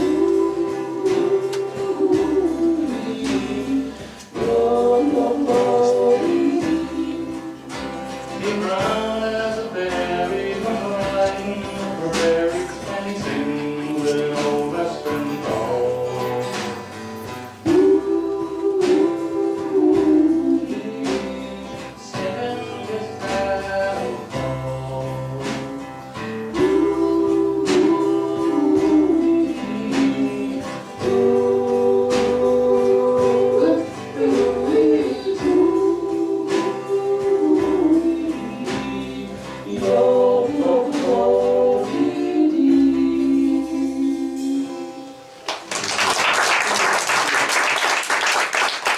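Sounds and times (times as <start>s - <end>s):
acoustic country band playing: 0.0s - 48.9s
applause: 45.4s - 48.9s.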